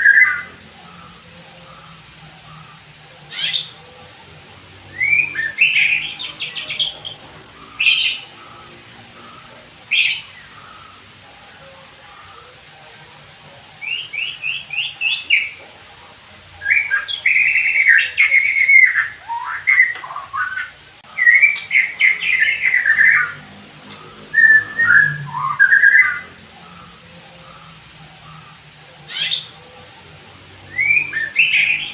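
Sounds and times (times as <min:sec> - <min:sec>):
bird whistled song: 0:00.0 - 0:00.6, 0:03.3 - 0:03.8, 0:04.9 - 0:08.4, 0:09.1 - 0:10.6, 0:13.8 - 0:15.6, 0:16.6 - 0:23.4, 0:24.3 - 0:26.4, 0:29.1 - 0:29.6, 0:30.7 - 0:31.9.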